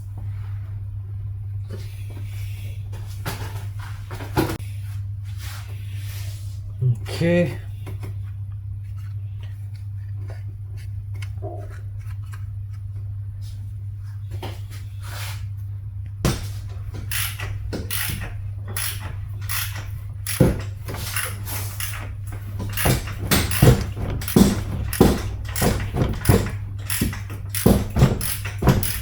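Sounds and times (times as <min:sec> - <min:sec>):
steady low hum: 0:00.0 - 0:29.0
metallic clanks of hand tools: 0:16.3 - 0:29.0.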